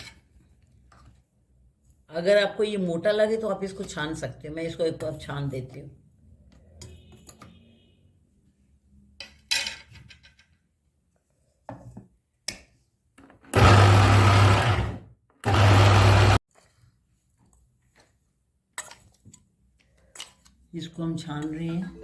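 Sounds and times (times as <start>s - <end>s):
mixer grinder grinding: 13.5s - 16.4s.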